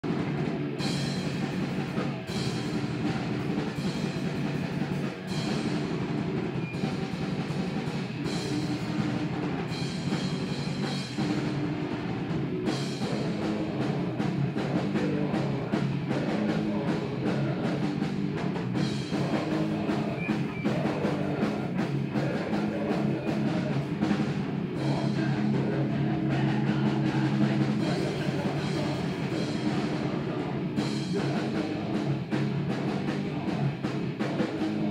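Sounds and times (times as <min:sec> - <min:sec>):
drum kit hitting: 0:00.0 - 0:34.9
live rock band playing: 0:00.0 - 0:34.9.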